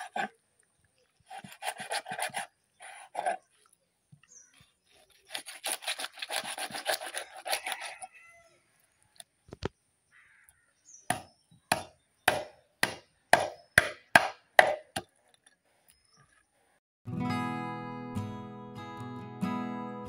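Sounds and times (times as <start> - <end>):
knife scraping fish on wooden board: 1.2 - 3.5, 5.0 - 8.1.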